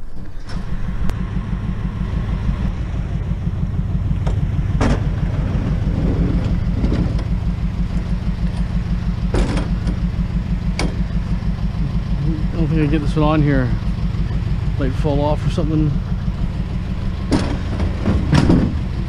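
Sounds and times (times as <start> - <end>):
truck engine idling: 0.0 - 19.0
sharp knocks: 4.2 - 5.2, 9.3 - 10.0, 10.7 - 11.1, 17.3 - 18.9.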